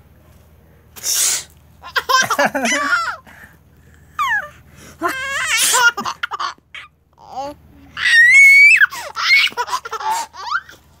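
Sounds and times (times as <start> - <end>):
boy sneezing: 1.0 - 1.5
high-pitched laughter: 1.9 - 3.2, 8.0 - 10.8.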